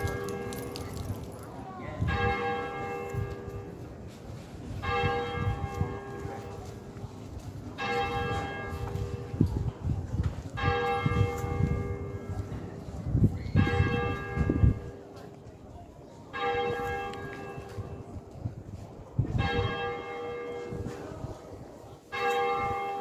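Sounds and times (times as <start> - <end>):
church bell tolling: 4.8 - 6.6, 7.8 - 9.5, 10.6 - 12.6, 16.4 - 18.1, 19.3 - 20.9, 22.1 - 23.0.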